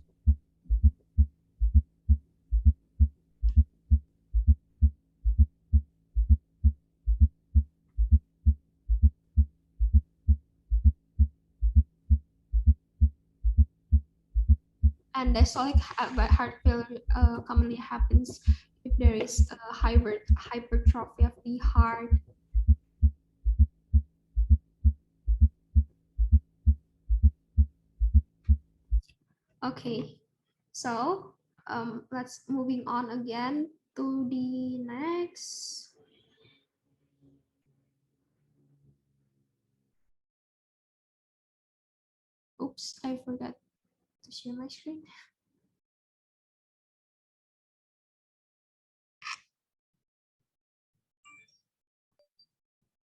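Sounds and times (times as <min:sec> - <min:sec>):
heart sounds dull low thumps: 0:00.0 - 0:29.1
faint steady hum: 0:14.4 - 0:24.6.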